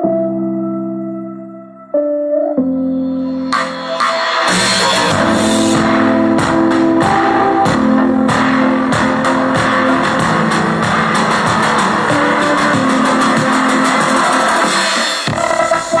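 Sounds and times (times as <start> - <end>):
guitar music with delay effect: 3.2 - 14.2
strummed guitar with regular beat: 3.6 - 16.0.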